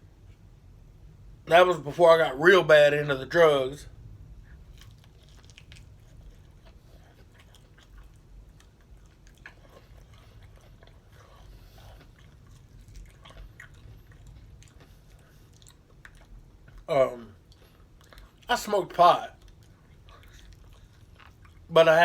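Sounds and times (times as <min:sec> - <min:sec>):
low room hum: 0:00.0 - 0:22.0
chewing and crunching: 0:04.4 - 0:22.0.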